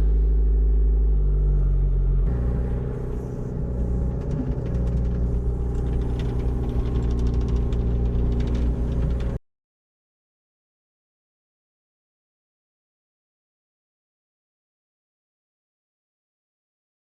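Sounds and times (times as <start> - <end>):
engine rumbling: 0.0 - 9.4
fast rattle of clicks: 4.3 - 9.4.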